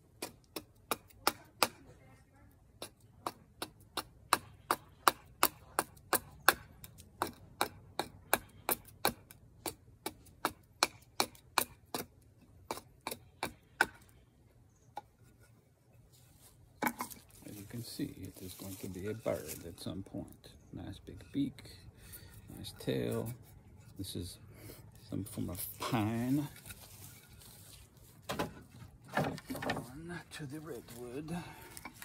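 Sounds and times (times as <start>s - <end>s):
hatchet chopping wood: 0.0s - 1.9s, 2.7s - 14.2s.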